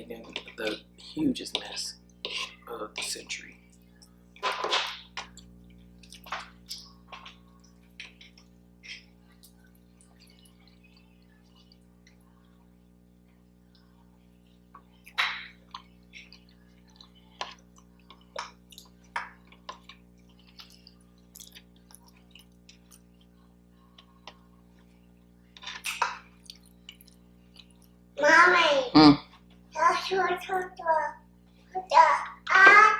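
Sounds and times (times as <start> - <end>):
wet mouth chewing sounds: 15.0 - 23.4, 25.9 - 28.0.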